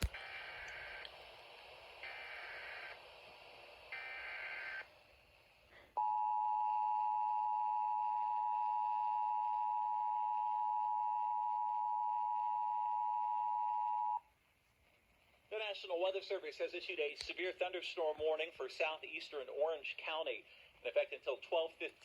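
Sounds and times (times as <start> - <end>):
radio static: 0.0 - 1.1, 2.0 - 4.9.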